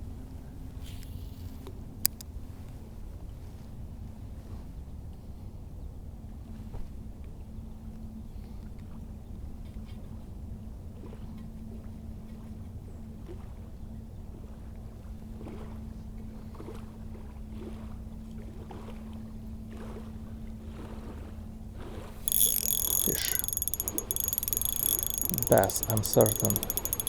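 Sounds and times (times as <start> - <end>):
fishing reel clicking whir: 22.2 - 27.0
faint soft ticks: 22.3 - 27.0.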